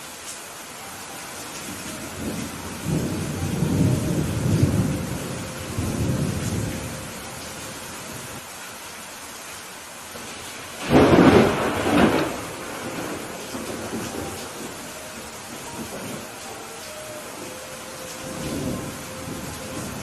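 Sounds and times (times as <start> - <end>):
rain hissing: 0.0 - 20.0
thunder rumbling: 1.7 - 8.4, 10.7 - 20.0.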